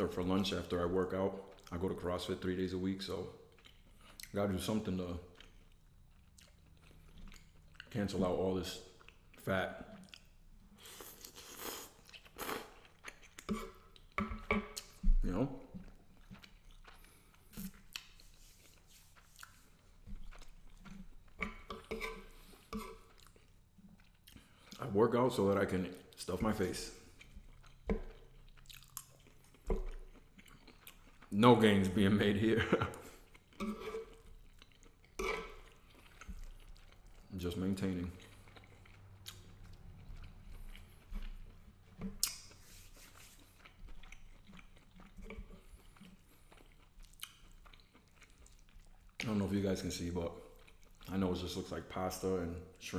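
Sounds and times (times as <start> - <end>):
person chewing food: 0.0 - 2.1, 3.1 - 49.3, 49.9 - 51.5
wet mouth clicks: 42.1 - 42.6.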